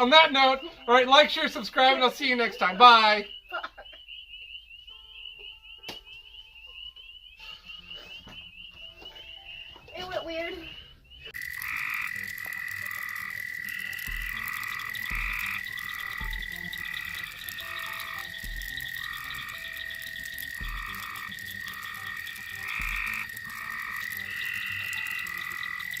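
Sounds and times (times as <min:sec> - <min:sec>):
frogs calling: 0:00.0 - 0:26.0
frog high trill: 0:11.4 - 0:26.0.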